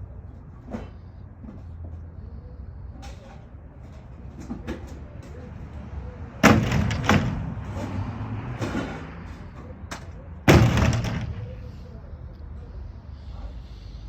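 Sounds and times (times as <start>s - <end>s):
debris crashing into steel dumpster: 6.4s - 7.7s, 10.5s - 11.6s
debris rattling clatter: 6.4s - 7.9s, 10.5s - 11.7s.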